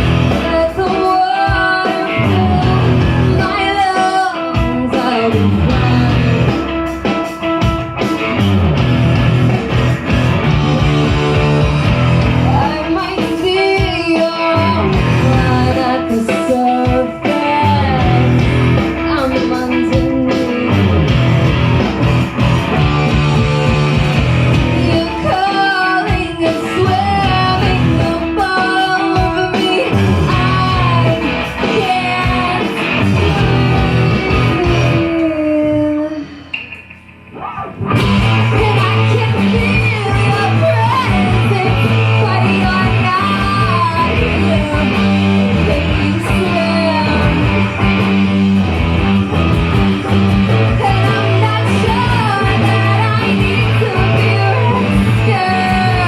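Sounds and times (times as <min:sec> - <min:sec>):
low bass line: 0:00.0 - 0:00.5, 0:08.3 - 0:12.7, 0:17.8 - 0:19.1, 0:20.7 - 0:25.0, 0:37.8 - 0:56.0
person singing: 0:00.0 - 0:07.5, 0:11.2 - 0:21.2, 0:24.5 - 0:36.7, 0:37.4 - 0:48.2, 0:50.4 - 0:56.0
live rock band playing: 0:00.0 - 0:56.0.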